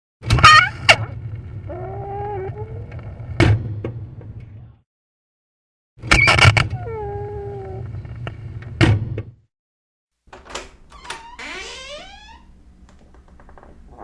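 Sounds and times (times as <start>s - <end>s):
door hinges squeaking: 10.3s - 14.0s.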